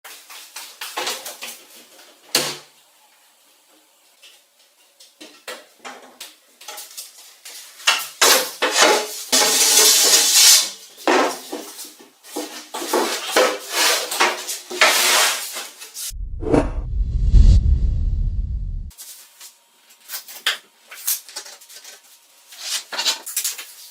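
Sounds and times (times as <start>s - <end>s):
bass-heavy music: 16.2s - 18.9s.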